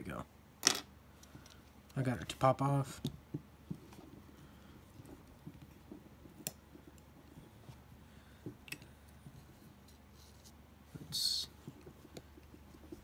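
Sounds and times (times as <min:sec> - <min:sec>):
small taps and clicks of knife parts: 0:08.6 - 0:08.9.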